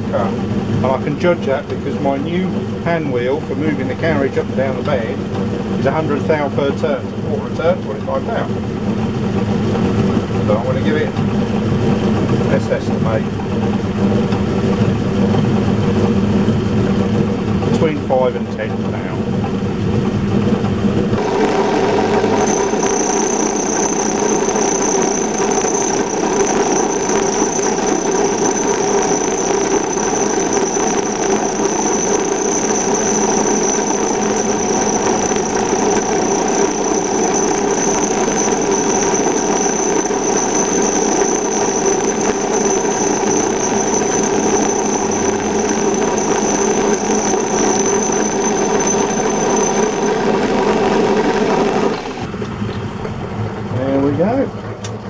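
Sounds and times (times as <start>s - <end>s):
milling cutter squealing: 21.2s - 52.3s.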